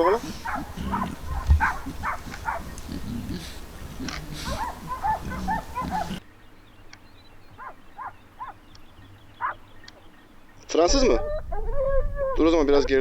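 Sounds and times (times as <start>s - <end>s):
dogs barking and yelping: 0.0s - 6.2s, 7.6s - 8.6s, 9.4s - 10.0s, 11.0s - 13.0s.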